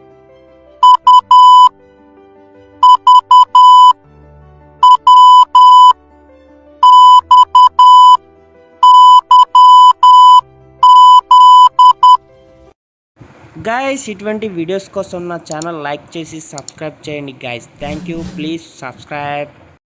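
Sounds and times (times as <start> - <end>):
morse code beeps: 0.8 - 1.7, 2.8 - 4.0, 4.8 - 6.0, 6.8 - 8.2, 8.8 - 12.2.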